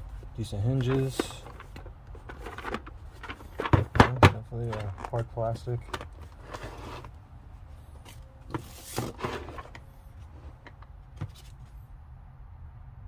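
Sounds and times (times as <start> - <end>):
plastic case clicks and knocks: 0.8 - 6.3.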